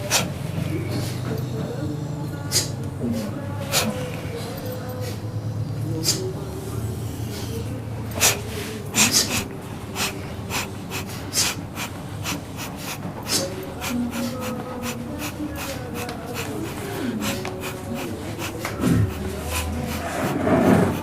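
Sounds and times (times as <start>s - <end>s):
faint humming voice: 0.0s - 21.0s
person breathing in quick puffs: 2.5s - 4.1s, 5.9s - 6.3s, 7.1s - 21.0s.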